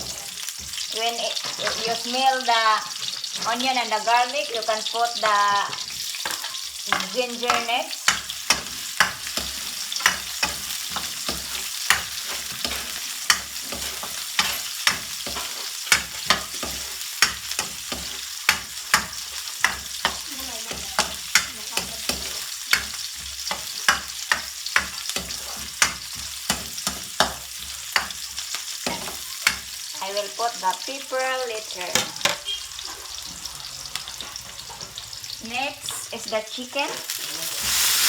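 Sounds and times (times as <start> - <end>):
food sizzling in hot oil: 0.0 - 38.0
utensil scraping a pan: 5.5 - 29.9, 31.8 - 36.1.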